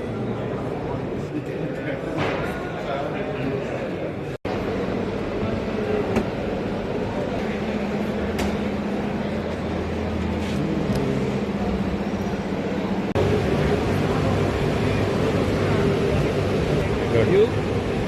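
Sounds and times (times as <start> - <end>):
machinery humming: 4.5 - 18.0.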